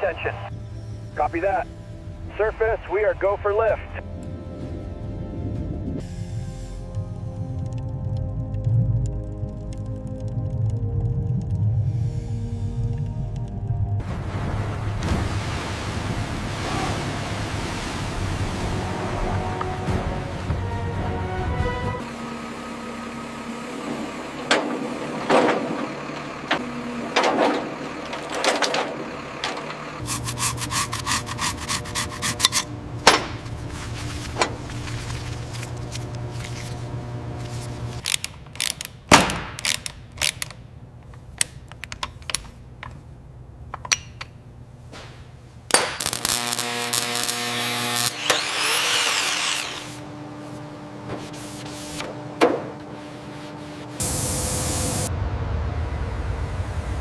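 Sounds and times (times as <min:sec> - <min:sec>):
power tool whining: 0:46.0 - 0:50.4.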